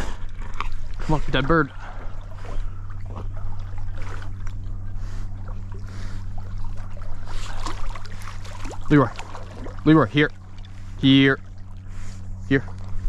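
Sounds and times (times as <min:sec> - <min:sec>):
steady low hum: 0:00.0 - 0:13.0
water sloshing and trickling: 0:00.0 - 0:13.0
small splashes: 0:00.2 - 0:11.9.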